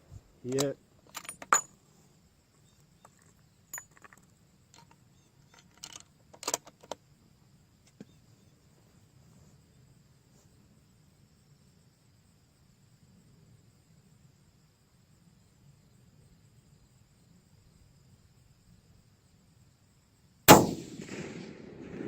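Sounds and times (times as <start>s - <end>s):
rifle bolt metallic clicks: 20.5s - 21.5s.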